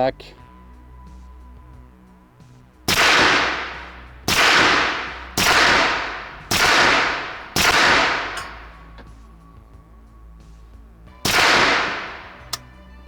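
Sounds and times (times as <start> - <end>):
suppressed gunshots: 2.8 - 9.3, 11.2 - 12.8.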